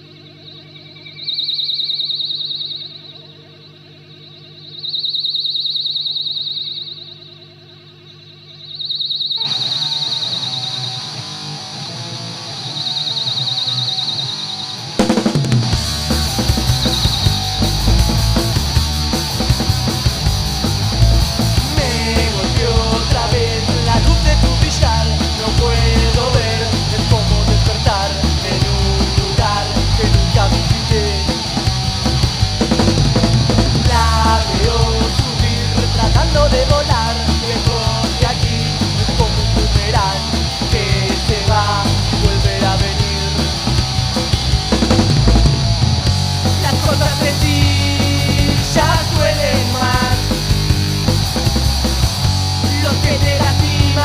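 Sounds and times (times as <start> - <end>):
punk rock band music: 9.5 - 54.0.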